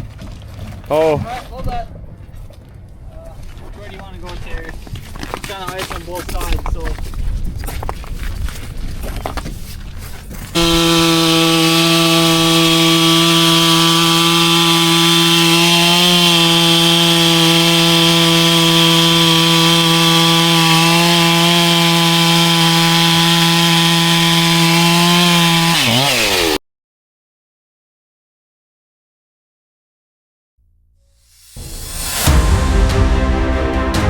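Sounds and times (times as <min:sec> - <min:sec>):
chainsaw cutting ice: 0:10.4 - 0:26.6, 0:31.4 - 0:32.4.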